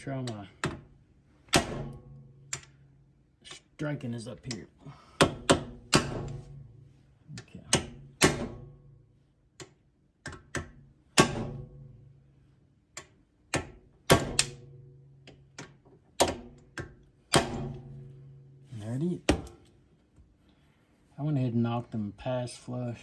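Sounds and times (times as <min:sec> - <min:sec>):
hammer striking metal: 0:01.5 - 0:02.7, 0:05.2 - 0:06.8, 0:07.7 - 0:08.8, 0:11.2 - 0:12.0, 0:14.1 - 0:14.8, 0:17.3 - 0:18.4.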